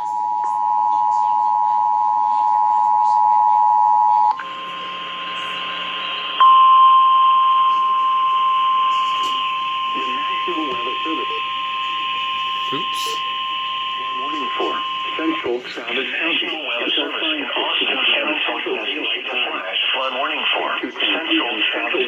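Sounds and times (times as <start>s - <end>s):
steady warning alarm tone: 0.0s - 22.0s
two-tone attention signal: 6.4s - 15.6s.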